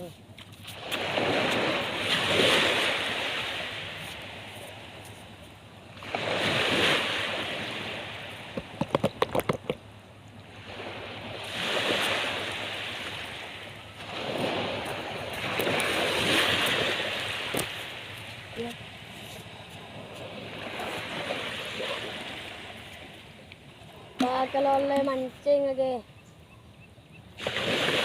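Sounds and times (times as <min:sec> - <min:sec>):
sea waves breaking on beach: 0:00.6 - 0:08.9, 0:10.4 - 0:25.9, 0:27.4 - 0:28.0.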